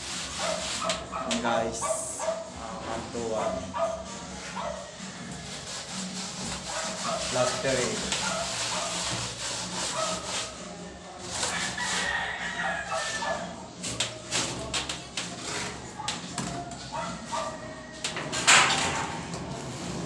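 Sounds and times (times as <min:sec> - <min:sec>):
plastering taps and scrapes: 0:00.1 - 0:01.5, 0:05.3 - 0:10.6, 0:11.2 - 0:20.0
rooster crowing: 0:11.3 - 0:13.6, 0:17.0 - 0:19.1.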